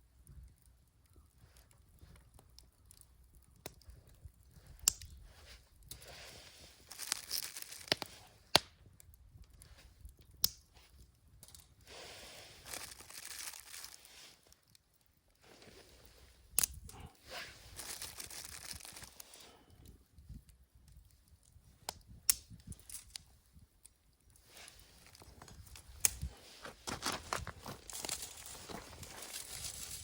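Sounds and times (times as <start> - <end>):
paper crinkling and rustling: 6.9 - 8.1, 12.6 - 14.3, 17.7 - 19.2, 26.4 - 30.0.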